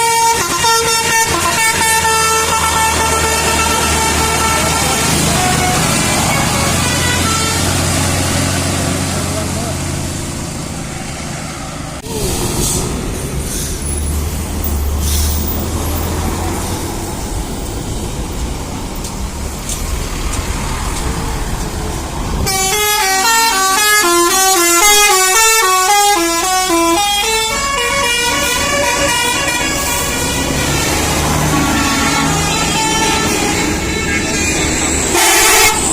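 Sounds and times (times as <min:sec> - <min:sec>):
musical bus horn melody: 0:00.0 - 0:08.6, 0:22.4 - 0:35.9
bus engine running: 0:00.0 - 0:35.9
road noise: 0:00.0 - 0:35.9.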